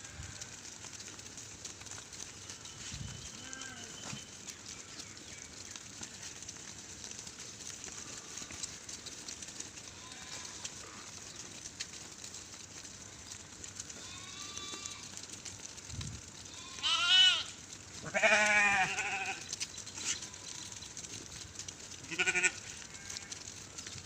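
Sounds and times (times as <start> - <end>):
sheep bleating: 3.3 - 4.1, 9.8 - 11.2, 13.8 - 15.2, 16.4 - 20.8, 22.0 - 23.5.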